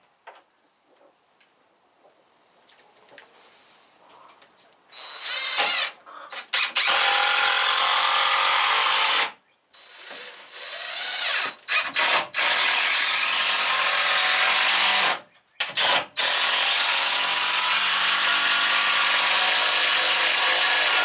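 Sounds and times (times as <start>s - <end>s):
power drill whining: 4.9s - 21.0s.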